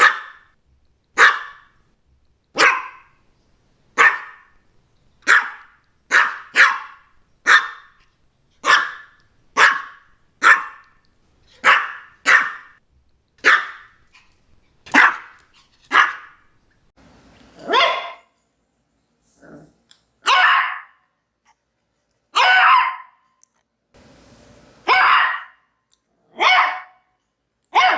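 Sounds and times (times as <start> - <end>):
small dog barking: 0.0 - 0.5, 1.2 - 1.8, 2.6 - 3.2, 4.0 - 4.6, 5.2 - 8.0, 8.6 - 11.0, 11.6 - 12.8, 13.4 - 14.0, 14.9 - 16.5, 17.6 - 18.3, 20.2 - 21.0, 22.3 - 23.2, 24.8 - 25.7, 26.3 - 27.1.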